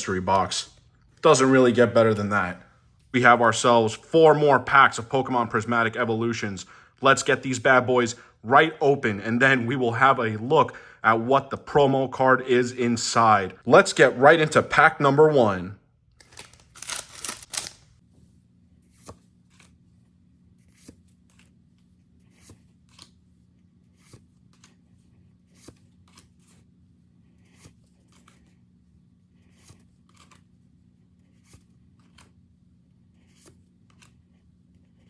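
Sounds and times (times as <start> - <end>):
trading cards flicking: 16.2 - 17.9.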